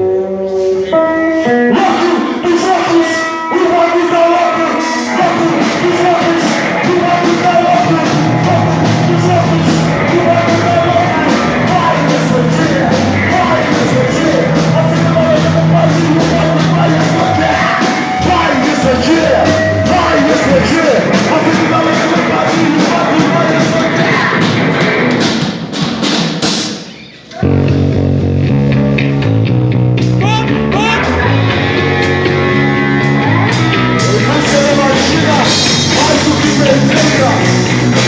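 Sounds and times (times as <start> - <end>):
heavy rock music: 0.0 - 38.0
person yelling vocals: 1.7 - 24.4, 30.1 - 31.6.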